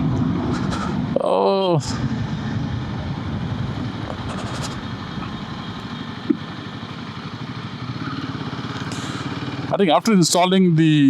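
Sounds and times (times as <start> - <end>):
radiator cooling fan: 1.9 - 7.5
motorcycle engine idling: 2.0 - 11.0.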